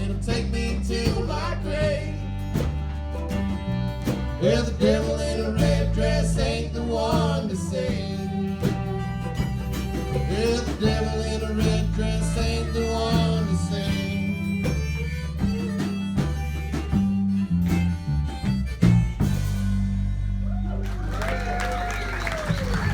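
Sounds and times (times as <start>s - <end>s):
country instrumental music: 0.0s - 22.9s.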